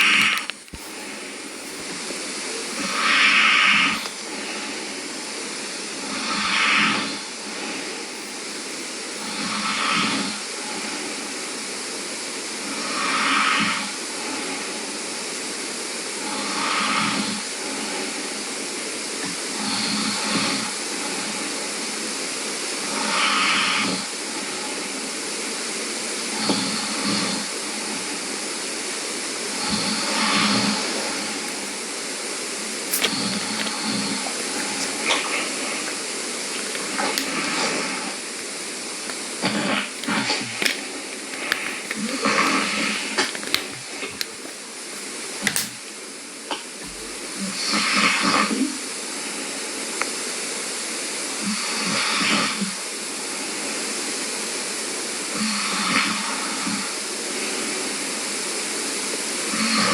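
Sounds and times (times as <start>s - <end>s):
steady hiss: 0.0s - 15.6s, 28.9s - 48.4s.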